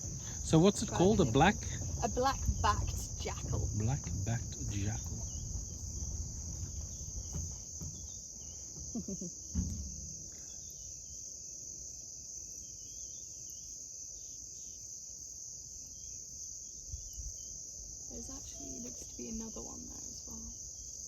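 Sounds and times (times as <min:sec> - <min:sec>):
low knocks: 0:00.0 - 0:10.7
crickets trilling: 0:00.0 - 0:21.0.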